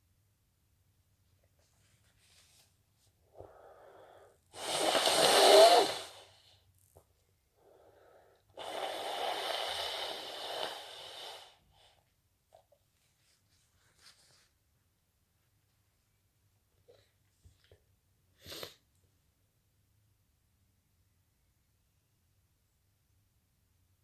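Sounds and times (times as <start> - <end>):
person breathing hard: 3.3 - 5.9, 7.6 - 11.6
person sneezing: 18.4 - 18.8.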